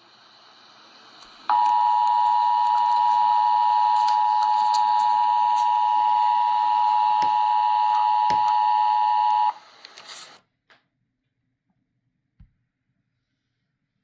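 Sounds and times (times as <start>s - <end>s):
two-tone attention signal: 1.5s - 9.5s.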